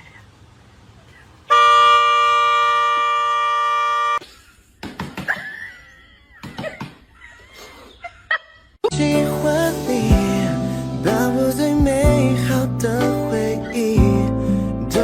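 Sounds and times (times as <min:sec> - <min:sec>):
loud horn blare: 0:01.5 - 0:04.2.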